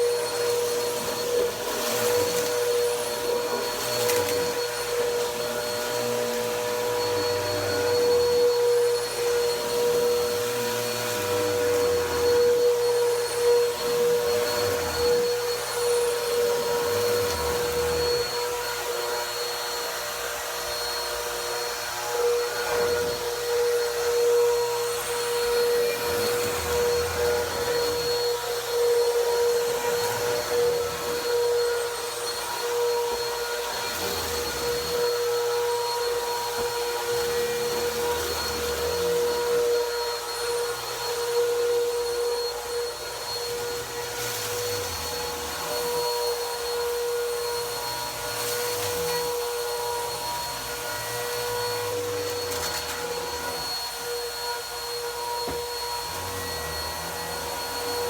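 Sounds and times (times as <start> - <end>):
vacuum cleaner running: 0.0 - 58.0.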